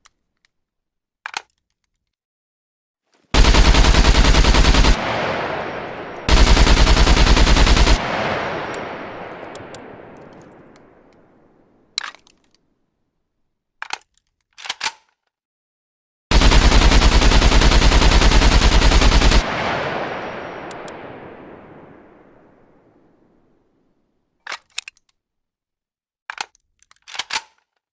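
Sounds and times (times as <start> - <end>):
rifle automatic fire: 3.4 - 11.5, 16.3 - 23.1
gunshot echo: 3.4 - 11.7, 16.3 - 23.2.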